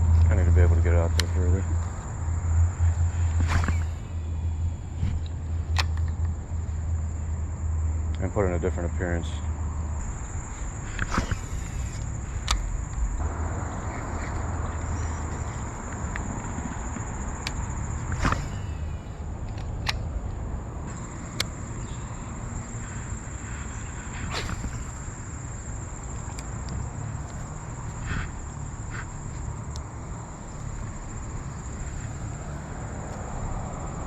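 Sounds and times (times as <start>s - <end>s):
high-pitched insect chorus: 0.0s - 34.0s
low rumble: 12.6s - 15.6s.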